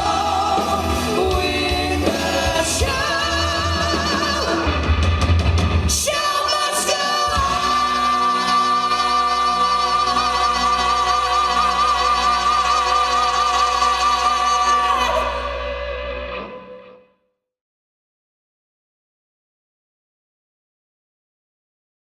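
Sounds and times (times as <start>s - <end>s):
rock band backing: 0.0s - 16.8s.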